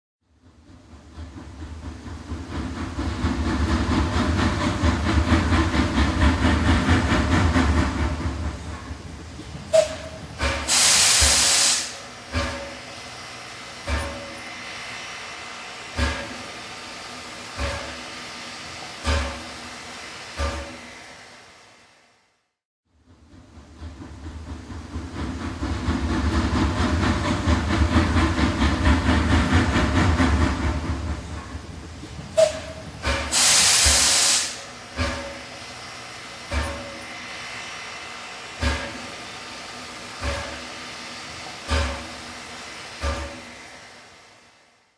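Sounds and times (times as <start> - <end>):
steam locomotive chugging: 0.2 - 22.0, 22.9 - 44.9
locomotive rumbling rhythmically: 0.4 - 10.6, 23.1 - 33.3.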